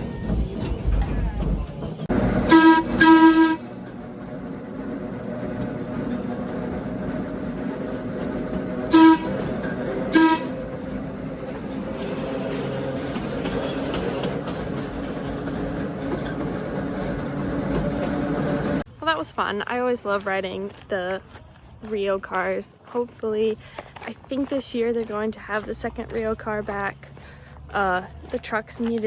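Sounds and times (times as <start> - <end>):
trolley whistle toots: 0.0 - 3.9, 8.9 - 10.7
electric trolley car running: 0.0 - 18.9.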